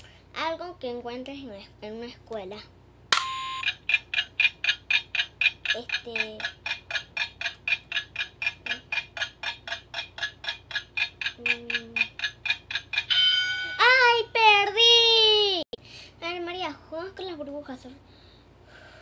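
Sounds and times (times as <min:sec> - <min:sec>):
short beep: 0:03.2 - 0:03.7
timer ticking fast: 0:03.3 - 0:14.1.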